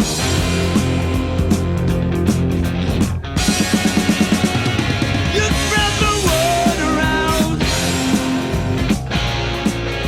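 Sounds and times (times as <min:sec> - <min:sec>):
rock music with drums and guitar: 0:00.0 - 0:10.0.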